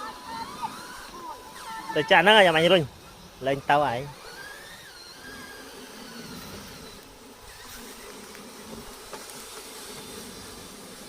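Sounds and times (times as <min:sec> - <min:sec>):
small electric motors whining: 0:00.0 - 0:11.0
steady hiss: 0:04.8 - 0:11.0.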